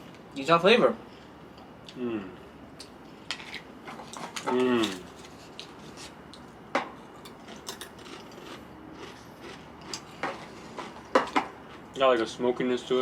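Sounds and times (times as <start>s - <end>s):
potato crisps crunched and chewed: 7.4s - 10.1s.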